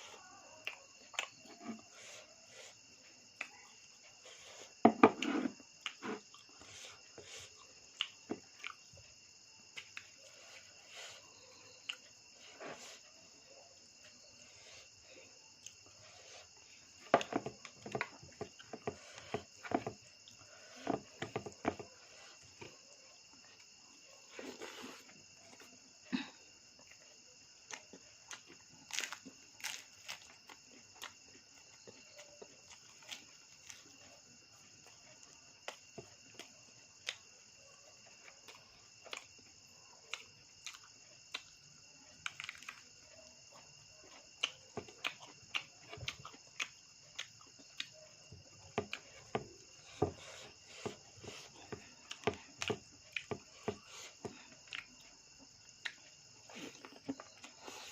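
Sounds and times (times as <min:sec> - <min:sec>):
crickets chirring: 0:00.0 - 0:57.9
chewing and smacking: 0:05.8 - 0:09.1, 0:43.5 - 0:57.9.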